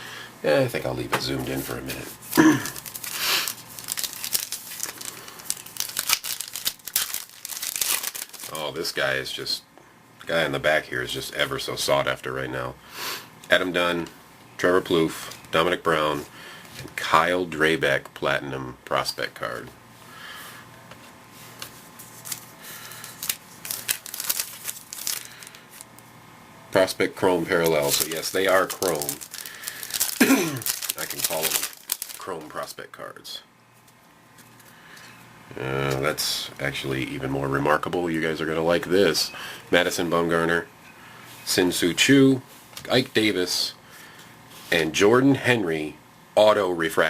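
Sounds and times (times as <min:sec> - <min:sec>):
cards rustling: 0:01.4 - 0:08.8, 0:20.9 - 0:26.0, 0:27.2 - 0:32.7
wrapper tearing and crinkling: 0:02.2 - 0:08.7, 0:22.0 - 0:25.9, 0:27.4 - 0:32.6.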